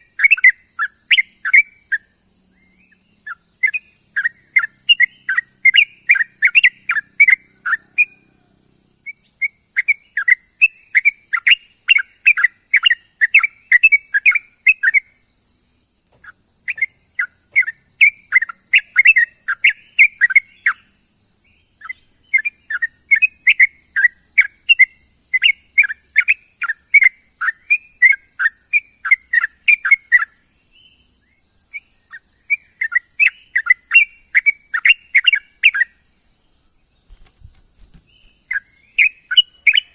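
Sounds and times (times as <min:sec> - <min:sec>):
steady high hiss: 0:33.5 - 0:39.9.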